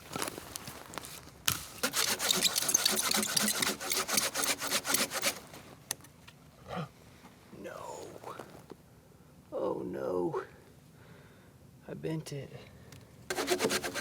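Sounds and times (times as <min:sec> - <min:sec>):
rasping strokes on wood: 0:01.8 - 0:05.5, 0:13.3 - 0:14.0.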